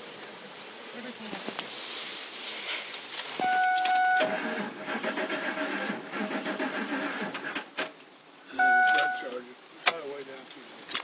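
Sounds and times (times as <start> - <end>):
short steady beep: 3.4 - 4.4, 8.5 - 9.4
starter cranking engine: 4.1 - 7.9.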